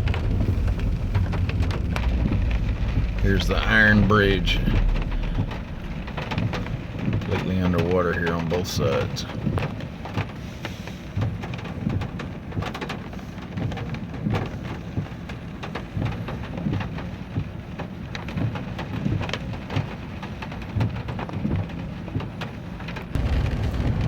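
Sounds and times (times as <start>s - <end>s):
low rumble: 0.0s - 9.7s, 23.1s - 24.0s
heavy rain on a truck: 0.0s - 24.0s.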